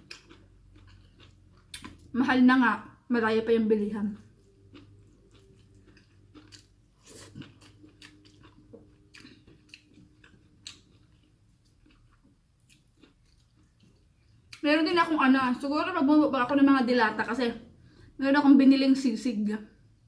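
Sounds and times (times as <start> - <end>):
person chewing and eating: 0.0 - 2.2, 4.1 - 14.6.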